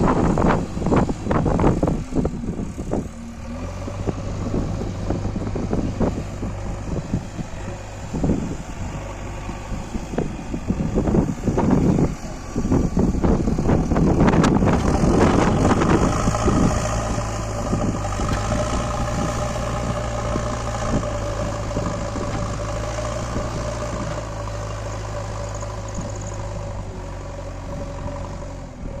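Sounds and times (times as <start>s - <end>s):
diesel engine running: 0.0s - 29.0s
engine knocking: 25.0s - 26.9s.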